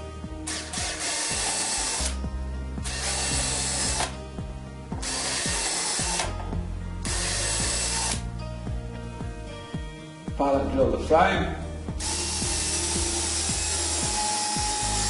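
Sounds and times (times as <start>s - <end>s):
power drill drilling: 0.4s - 2.2s, 2.8s - 4.2s, 5.0s - 6.4s, 7.0s - 8.2s, 12.0s - 15.0s.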